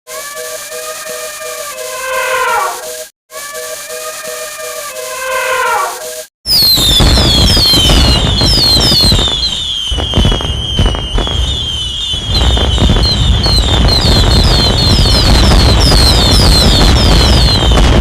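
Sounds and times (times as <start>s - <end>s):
high falling chirp: 0.1s - 17.7s
crackling rumbling noise: 6.5s - 18.0s.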